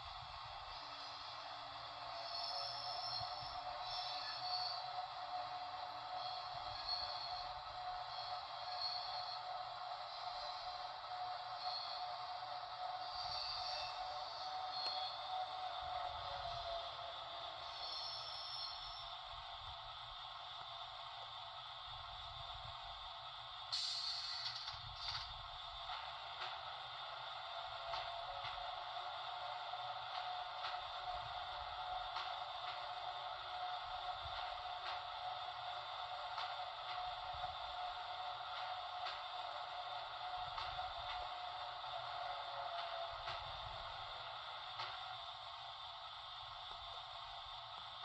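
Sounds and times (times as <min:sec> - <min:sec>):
model train hiss and hum: 0:00.0 - 0:48.0.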